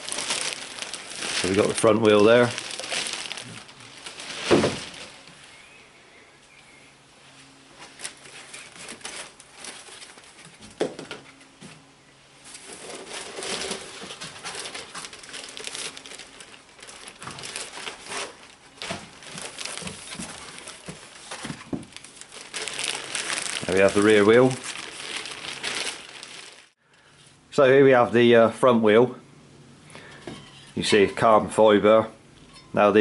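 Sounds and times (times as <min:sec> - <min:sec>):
packaging crinkling and rustling: 0:00.0 - 0:05.4, 0:07.8 - 0:10.6, 0:12.4 - 0:26.8.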